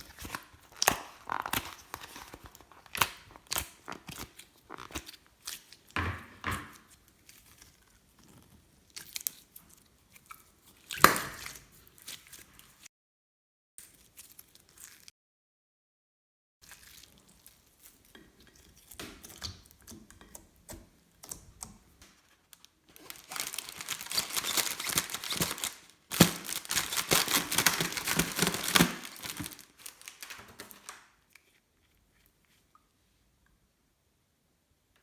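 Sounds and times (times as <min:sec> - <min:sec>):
sticky slime crackling and tearing: 0:00.0 - 0:05.8, 0:22.9 - 0:31.1.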